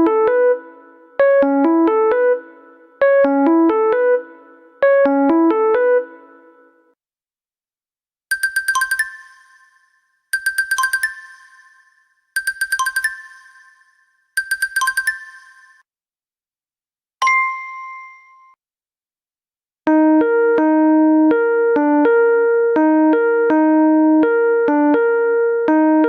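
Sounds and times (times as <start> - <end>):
electric piano ringtone melody: 0.0 - 6.5, 8.3 - 15.8, 19.9 - 26.0
jingling ringtone: 8.3 - 15.8.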